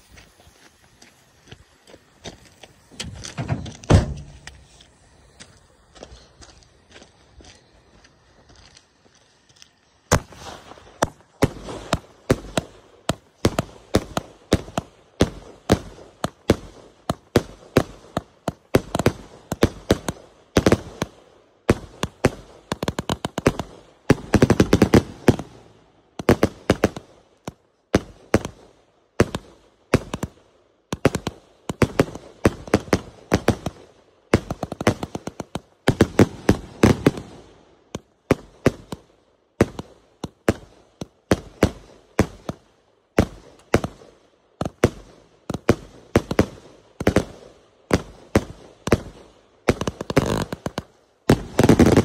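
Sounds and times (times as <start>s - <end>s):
sharp bangs: 2.8s - 4.8s.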